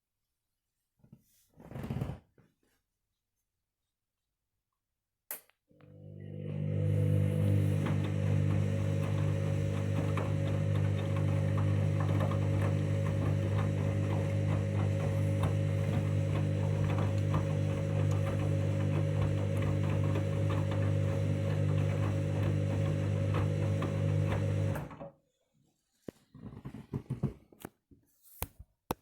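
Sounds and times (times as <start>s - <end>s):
washing machine humming: 5.8s - 25.0s.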